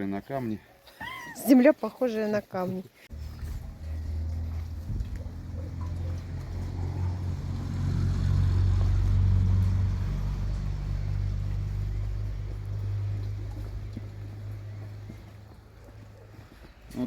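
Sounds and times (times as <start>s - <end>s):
low steady rumble: 3.1s - 15.6s.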